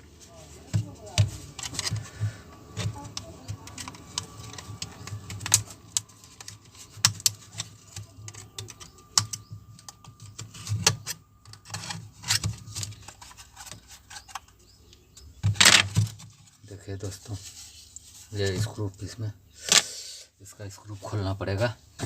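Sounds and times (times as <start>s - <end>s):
hands clicking on plastic casing: 0.7s - 16.2s.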